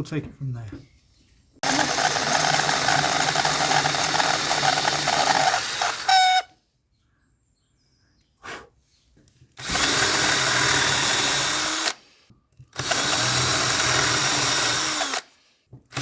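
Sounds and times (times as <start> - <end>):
electric drill running: 1.6 - 6.5, 9.6 - 12.0, 12.8 - 15.3.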